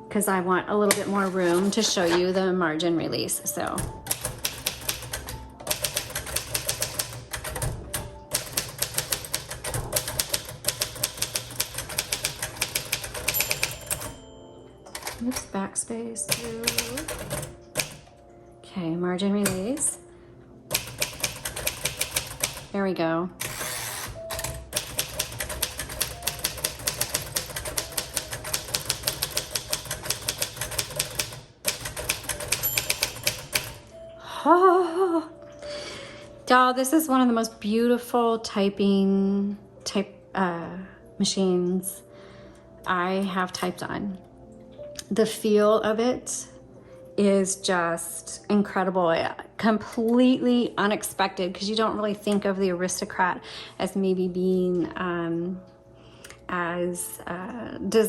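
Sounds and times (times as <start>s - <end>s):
typewriter keys clacking: 3.8s - 14.2s, 16.3s - 18.0s, 20.7s - 22.7s, 23.4s - 33.9s.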